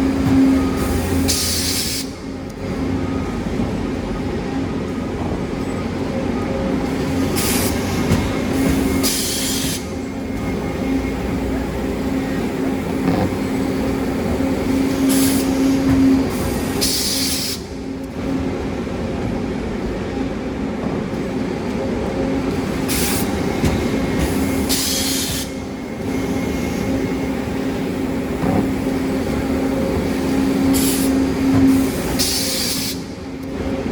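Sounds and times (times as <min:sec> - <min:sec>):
baler machine humming: 0:10.0 - 0:16.2.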